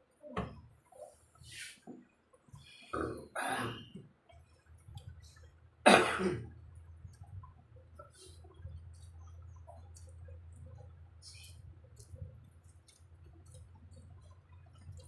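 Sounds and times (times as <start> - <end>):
person clearing throat: 3.0 - 4.0, 5.9 - 6.5
person coughing: 3.0 - 4.0, 5.9 - 6.5.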